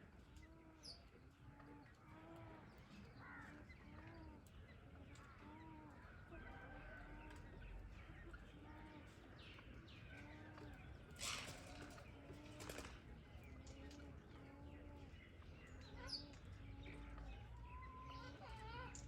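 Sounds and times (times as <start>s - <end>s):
small birds chirping: 7.1s - 19.0s.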